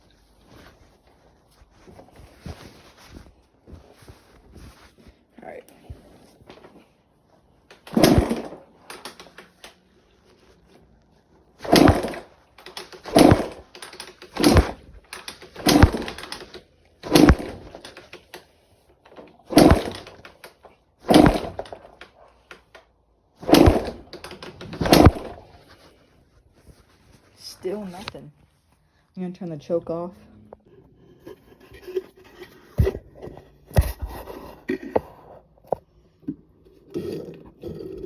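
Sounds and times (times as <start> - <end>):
kick-starter turning engine over: 7.7 - 9.8, 11.6 - 22.8, 23.4 - 25.7.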